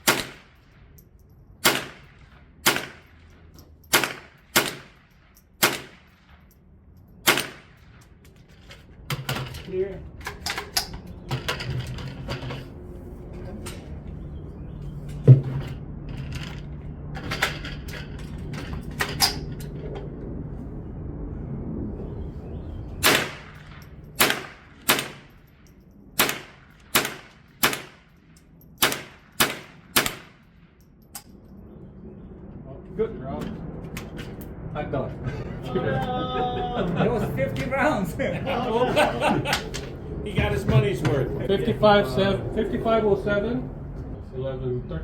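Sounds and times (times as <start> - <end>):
gunshots with ringing tail: 0.0 - 1.0, 1.6 - 6.4, 7.2 - 8.0, 23.0 - 30.8
steady low hum: 0.0 - 45.0.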